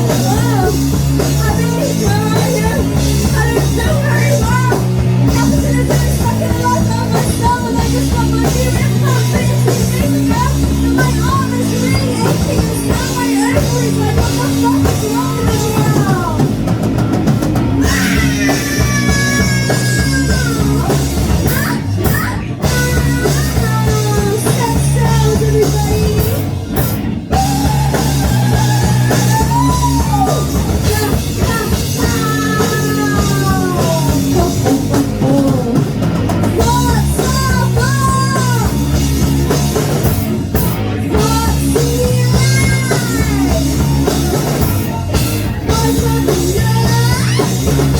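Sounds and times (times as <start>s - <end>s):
bass guitar: 0.0s - 47.9s
distorted electric guitar: 0.0s - 47.9s
drum kit beat: 0.0s - 47.9s
person singing: 17.8s - 39.0s, 39.8s - 47.9s.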